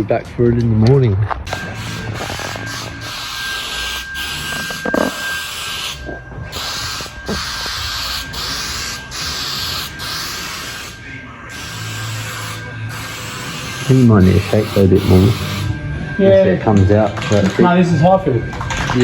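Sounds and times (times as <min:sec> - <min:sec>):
paint spray hissing: 0:01.5 - 0:15.7
faint high whine: 0:01.5 - 0:19.0.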